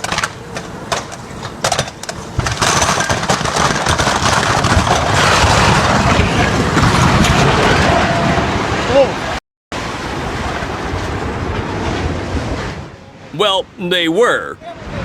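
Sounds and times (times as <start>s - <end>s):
structure cracking: 0.0s - 9.0s.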